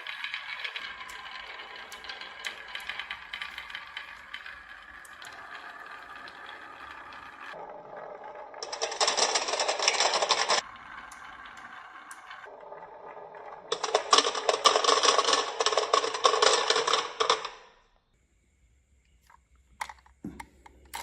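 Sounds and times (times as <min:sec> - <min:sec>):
marbles rolling and clicking: 0:00.0 - 0:17.8
dense marble clatter: 0:08.6 - 0:10.6, 0:13.7 - 0:17.6.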